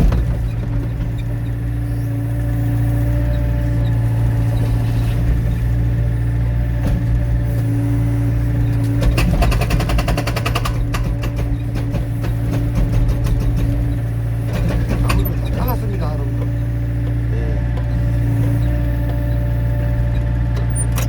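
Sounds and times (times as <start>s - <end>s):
diesel engine running: 0.0s - 21.0s
hydraulic breaker hammering: 8.8s - 19.6s.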